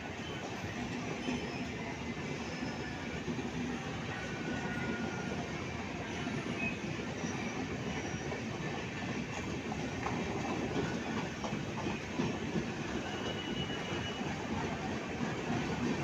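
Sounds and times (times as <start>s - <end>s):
train wheels rumbling and clattering: 0.0s - 16.0s
faint high squeals: 1.2s - 3.2s.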